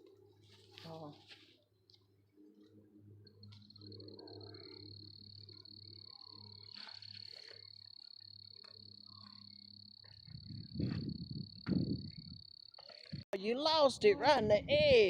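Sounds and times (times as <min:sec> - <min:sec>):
frogs croaking: 0:03.2 - 0:13.2
steady high-pitched tone: 0:03.2 - 0:13.5.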